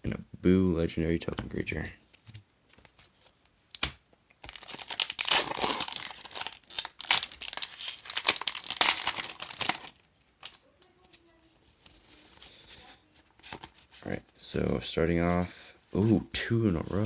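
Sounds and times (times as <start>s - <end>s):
foil wrapper tearing and crinkling: 3.7s - 10.6s.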